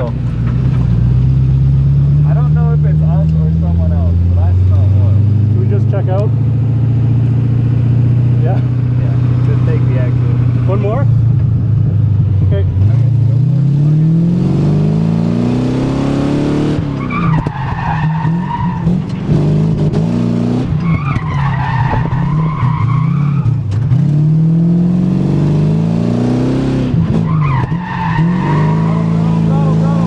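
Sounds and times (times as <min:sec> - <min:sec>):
car engine revving hard: 0:12.6 - 0:21.3, 0:21.9 - 0:30.0
tyres squealing: 0:27.1 - 0:30.0.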